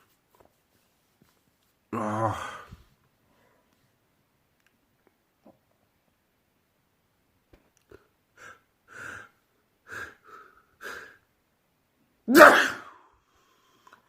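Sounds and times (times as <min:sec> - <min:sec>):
man sneezing loudly: 0:12.3 - 0:13.0.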